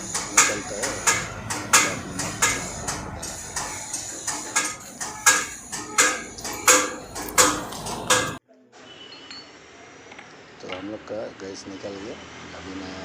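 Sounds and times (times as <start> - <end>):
hammer clanking on steel: 0.0 - 8.4.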